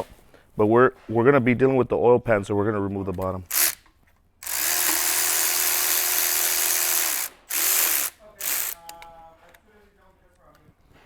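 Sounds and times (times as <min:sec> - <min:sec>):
cordless power tool spinning: 0:03.5 - 0:03.8, 0:04.4 - 0:09.0.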